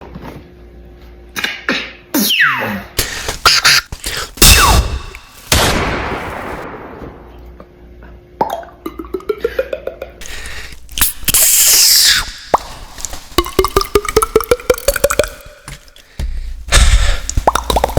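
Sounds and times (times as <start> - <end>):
beatboxer falling whistle glides: 2.2 - 2.8, 11.3 - 12.4
beatboxer loud burst: 3.0 - 5.3, 10.2 - 12.6
beatboxing clicks and pops: 10.2 - 16.1, 16.7 - 17.9.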